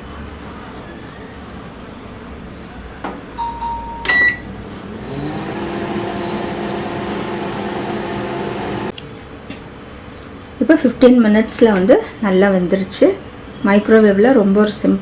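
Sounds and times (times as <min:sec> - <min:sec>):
microwave beeps: 0:03.4 - 0:04.6
microwave oven humming: 0:03.4 - 0:09.0.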